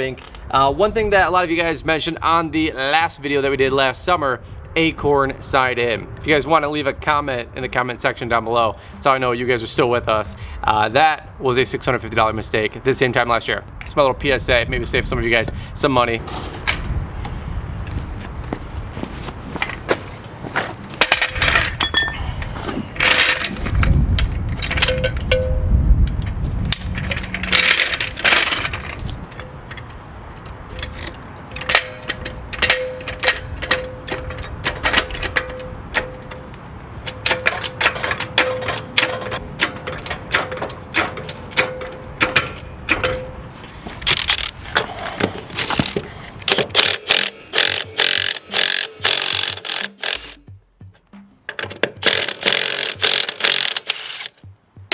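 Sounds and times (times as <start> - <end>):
quiet background music: 0.0 - 54.9
hand tools clinking on metal: 18.2 - 50.4, 51.5 - 54.4.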